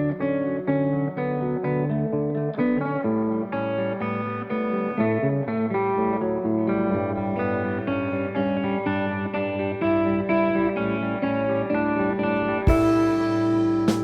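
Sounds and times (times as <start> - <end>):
guitar picking a melody: 0.0 - 14.0
steady low bass line: 12.7 - 14.0.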